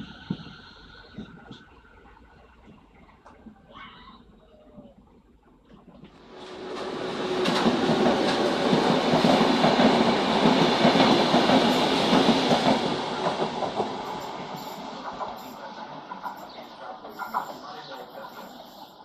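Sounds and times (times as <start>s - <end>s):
train passing on track: 0.0s - 4.6s, 5.9s - 19.0s.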